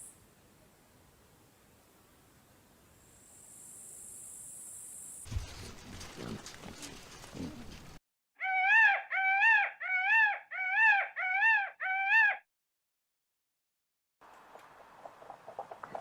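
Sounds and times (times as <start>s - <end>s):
low rustle: 5.3s - 8.0s
animal high-pitched cries: 8.4s - 12.4s.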